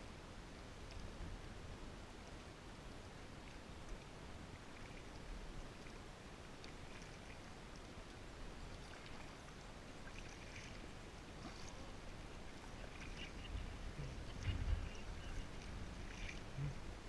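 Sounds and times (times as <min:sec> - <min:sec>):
paddle splashes and trickles: 0:03.0 - 0:17.0
steady low rumble: 0:10.8 - 0:17.0.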